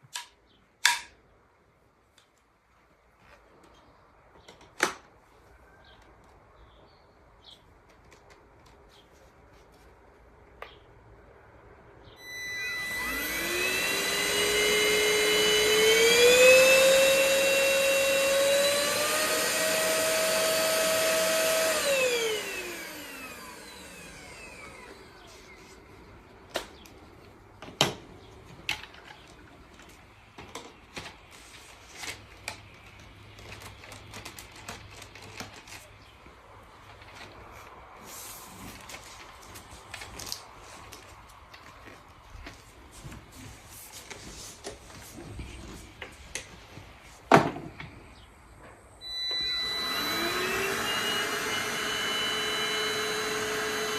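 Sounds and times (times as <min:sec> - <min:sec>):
vacuum cleaner motor whining: 0:12.2 - 0:25.8, 0:49.0 - 0:53.9.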